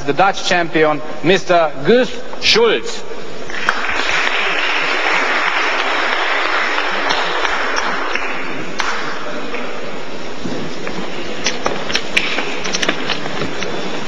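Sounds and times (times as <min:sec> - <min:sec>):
audience applauding: 0:03.5 - 0:09.7.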